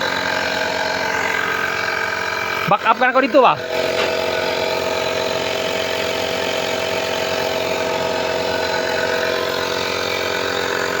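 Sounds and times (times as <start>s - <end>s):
pickup engine idling: 0.0s - 11.0s.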